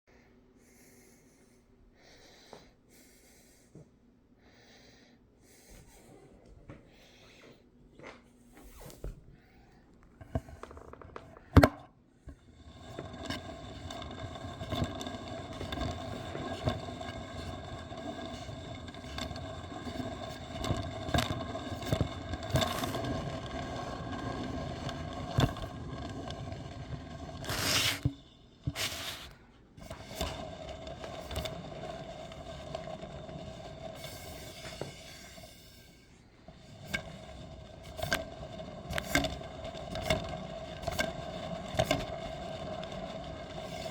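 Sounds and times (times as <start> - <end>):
fan ticking and scraping: 10.0 - 43.9.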